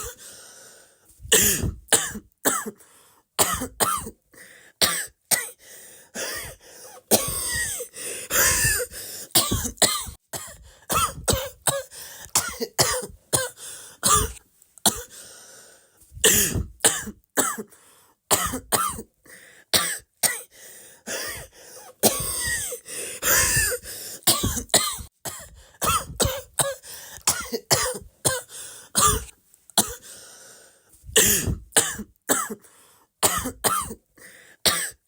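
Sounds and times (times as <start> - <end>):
person coughing: 0.0 - 0.2, 1.3 - 2.8, 3.4 - 4.2, 6.2 - 15.2, 16.2 - 17.7, 18.3 - 19.1, 21.1 - 30.1, 31.1 - 32.6, 33.2 - 34.0, 34.7 - 35.0.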